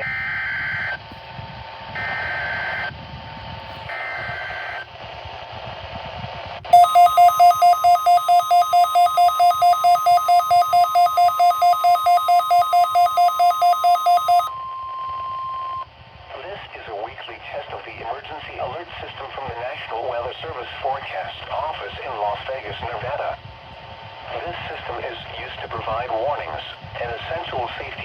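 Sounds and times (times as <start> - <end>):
rapidly pulsing two-pitch beep: 6.8 - 14.5
steady alert tone: 6.8 - 14.5
warbling data tone bursts: 6.8 - 14.5.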